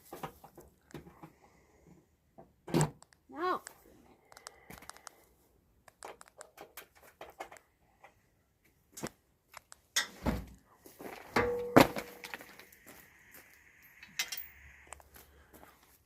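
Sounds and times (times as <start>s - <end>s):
metal tools knocking and clanking: 11.4s - 12.3s, 14.0s - 14.6s
light clicks of metal tools: 13.8s - 15.2s.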